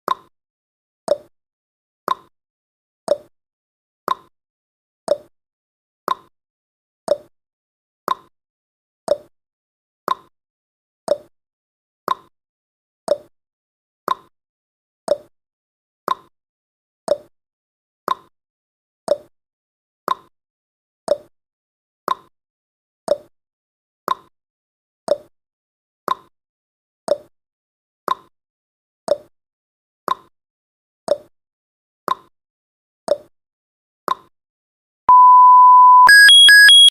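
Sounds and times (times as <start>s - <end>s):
timer ticking: 35.1s - 36.9s.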